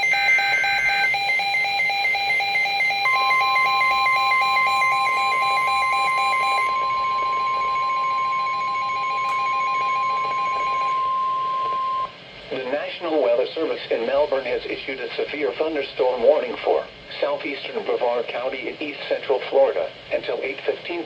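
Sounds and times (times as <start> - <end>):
fast-pulsing electronic beeping alarm: 0.0 - 12.1
steady warning alarm tone: 0.0 - 12.2.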